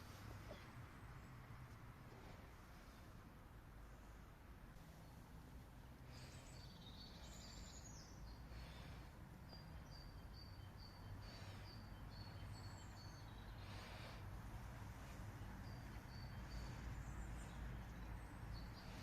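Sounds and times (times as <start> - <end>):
low steady rumble: 0.0 - 19.0
faint high-pitched bird chirps: 6.2 - 13.6, 15.1 - 19.0.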